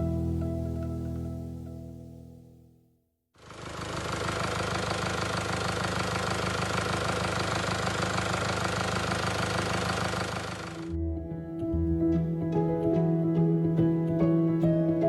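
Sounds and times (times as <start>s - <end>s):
car engine rattling: 3.4s - 11.0s.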